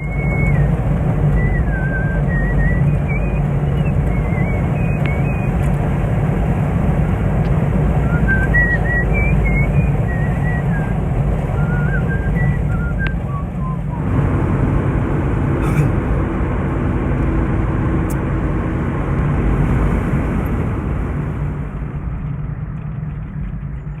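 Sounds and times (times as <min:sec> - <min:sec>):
man whistling: 0:00.0 - 0:05.6, 0:08.0 - 0:14.0
vehicle engine and road noise: 0:00.0 - 0:24.0.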